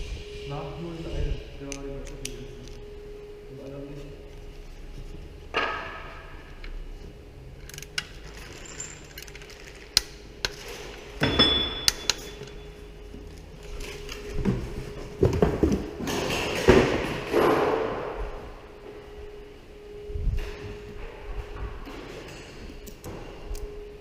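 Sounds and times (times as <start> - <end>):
faint steady hum: 0.0 - 24.0
metallic clicks of hand tools: 11.8 - 12.5.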